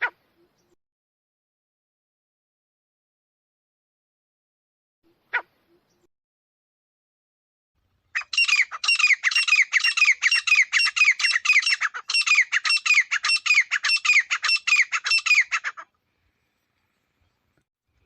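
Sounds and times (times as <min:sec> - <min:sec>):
francolin calling: 0:08.2 - 0:15.9.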